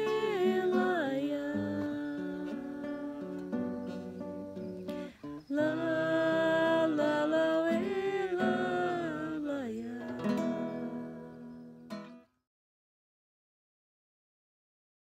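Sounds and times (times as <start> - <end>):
person singing long held notes: 0.0 - 4.4, 5.5 - 11.9
acoustic guitar: 0.0 - 12.4.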